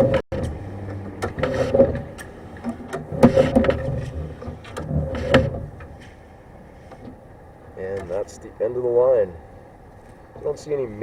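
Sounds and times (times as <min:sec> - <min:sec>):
cable sliding and rattling in drain: 0:00.0 - 0:06.2.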